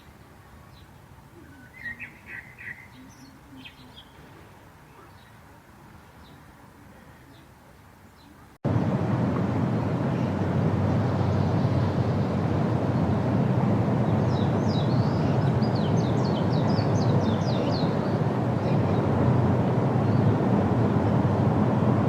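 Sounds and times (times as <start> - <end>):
faint bird chirps: 0.7 - 4.3
small bird high chirps: 1.5 - 4.2
rushing water roar: 8.7 - 22.0.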